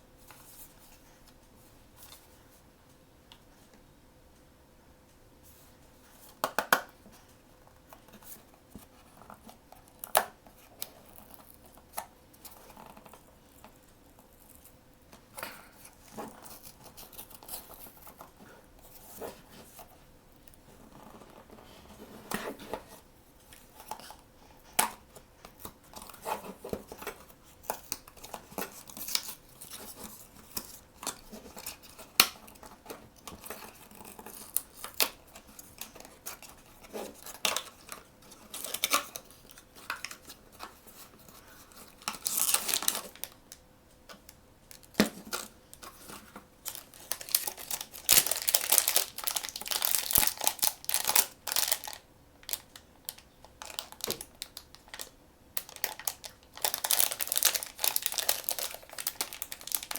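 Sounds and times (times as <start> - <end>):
packaging crinkling: 23.6 - 43.4, 44.7 - 59.9
packaging rustling: 25.4 - 43.4, 44.7 - 59.9
packaging tearing: 42.0 - 43.3, 46.6 - 52.6, 53.6 - 59.9.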